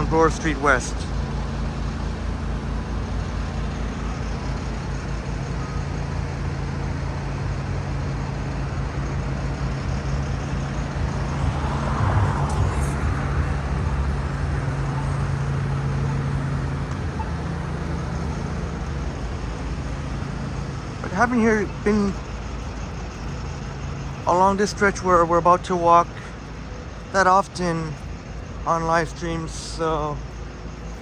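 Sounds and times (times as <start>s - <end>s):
vehicle engine humming: 0.0s - 31.0s
vehicle passing by: 6.8s - 31.0s.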